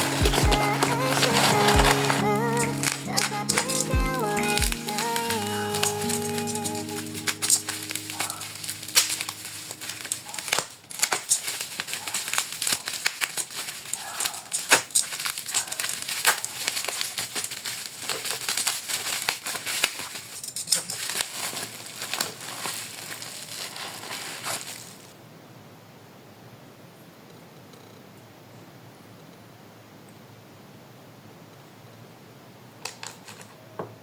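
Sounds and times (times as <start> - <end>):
plastic packaging crinkling: 0.0 - 25.1, 32.8 - 33.5.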